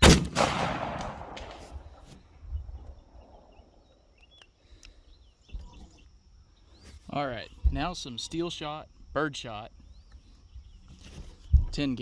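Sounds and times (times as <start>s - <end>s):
gunshot echo: 0.0s - 2.1s
faint bird chirps: 1.8s - 8.6s, 9.6s - 12.0s.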